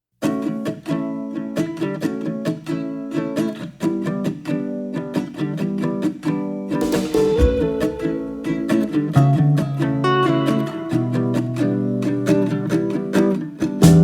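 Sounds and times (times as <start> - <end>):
acoustic guitar strumming: 0.2 - 14.0.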